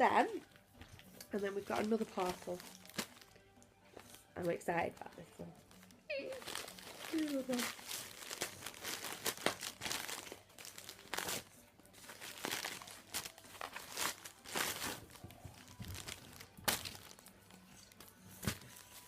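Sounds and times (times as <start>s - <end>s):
packaging being torn and crumpled: 2.2s - 3.3s, 6.3s - 19.0s.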